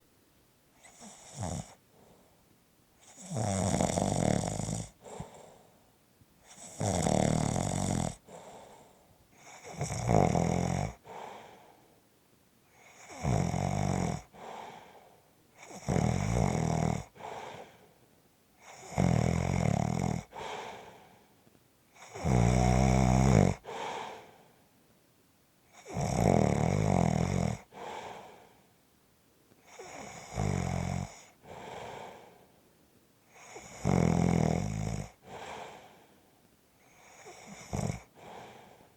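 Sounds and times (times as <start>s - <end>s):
loud rattling snoring: 0.8s - 1.8s, 3.0s - 5.0s, 6.5s - 8.2s, 9.4s - 11.0s, 12.8s - 14.3s, 15.6s - 17.3s, 18.6s - 20.3s, 22.0s - 23.7s, 25.8s - 28.0s, 29.7s - 31.8s, 33.4s - 35.2s, 37.0s - 38.4s
soft breath: 1.7s - 3.2s, 4.9s - 6.7s, 8.1s - 9.7s, 11.0s - 12.1s, 14.2s - 15.4s, 17.1s - 18.8s, 20.2s - 22.2s, 23.6s - 24.7s, 27.6s - 28.7s, 31.2s - 32.7s, 35.1s - 38.9s.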